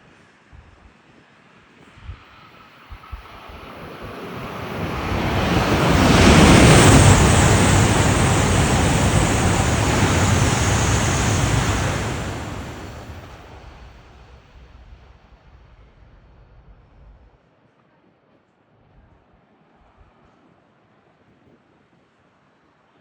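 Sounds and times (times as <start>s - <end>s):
high-speed train passing: 2.3s - 14.3s.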